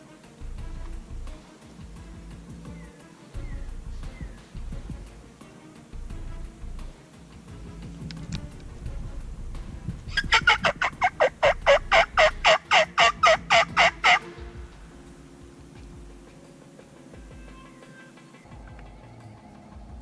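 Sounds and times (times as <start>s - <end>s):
turkey calling: 10.4s - 14.2s.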